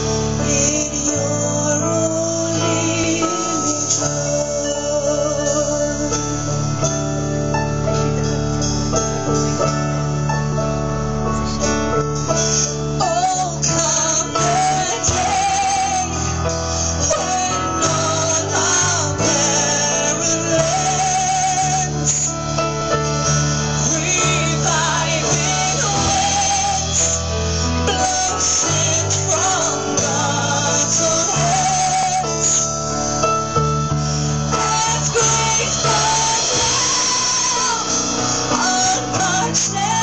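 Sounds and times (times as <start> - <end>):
guitar accompaniment: 0.0 - 40.0
steady bass notes: 0.0 - 40.0
woman singing with vibrato: 13.0 - 22.4, 23.8 - 32.9, 34.5 - 40.0.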